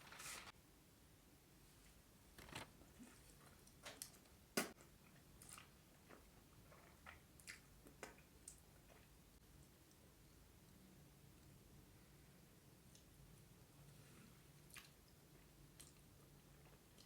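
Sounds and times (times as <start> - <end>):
person chewing food: 4.8 - 9.2, 14.6 - 17.0.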